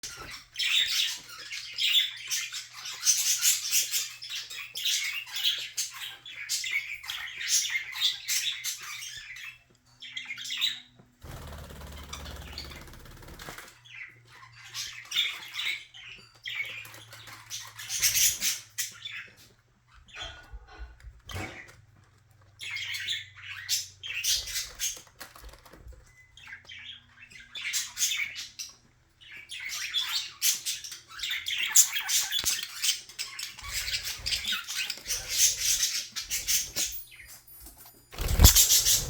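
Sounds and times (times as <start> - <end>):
birds rustling through clothes: 33.2 - 39.0
bird chirps: 38.2 - 39.0.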